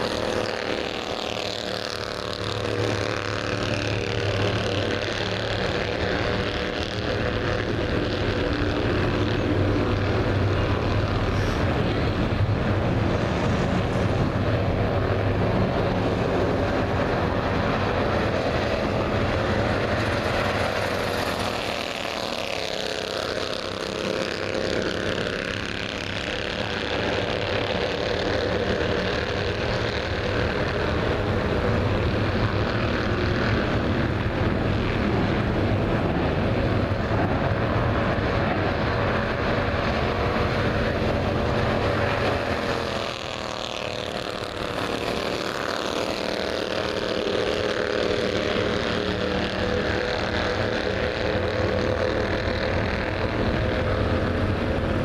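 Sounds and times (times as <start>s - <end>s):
race car engine running: 0.0s - 55.0s.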